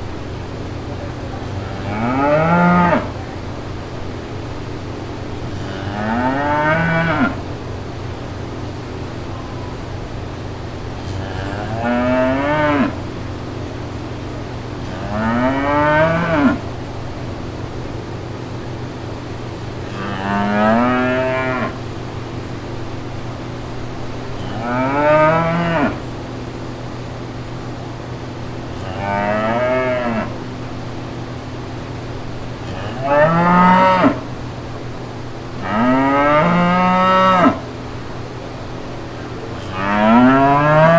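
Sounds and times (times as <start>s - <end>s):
steady low hum: 0.0s - 40.9s
cow mooing: 1.7s - 3.2s, 5.5s - 7.4s, 11.1s - 13.0s, 14.8s - 16.7s, 19.8s - 21.8s, 24.4s - 26.0s, 28.8s - 30.4s, 32.7s - 34.3s, 35.6s - 37.7s, 39.6s - 40.9s.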